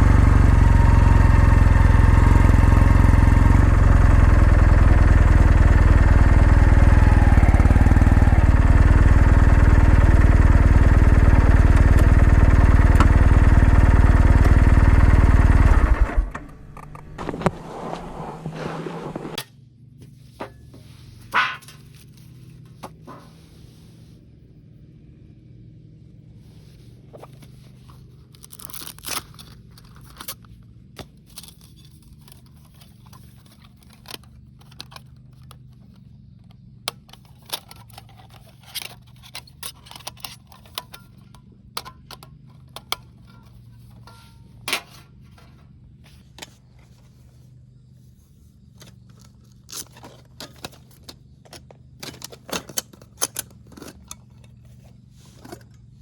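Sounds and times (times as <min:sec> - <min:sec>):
steady low hum: 0:05.3 - 0:56.0
small objects clicking and knocking: 0:28.3 - 0:45.6, 0:48.8 - 0:55.9.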